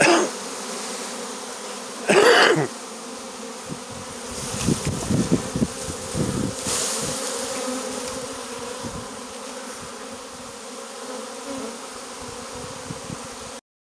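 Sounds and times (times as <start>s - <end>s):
bee swarm buzzing: 0.0s - 13.6s.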